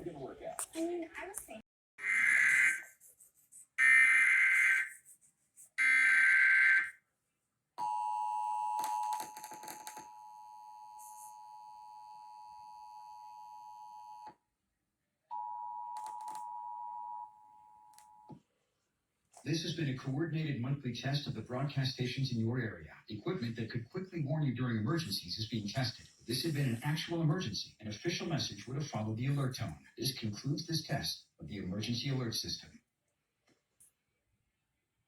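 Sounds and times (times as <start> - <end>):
screechy digital data bursts: 2.0 - 2.9.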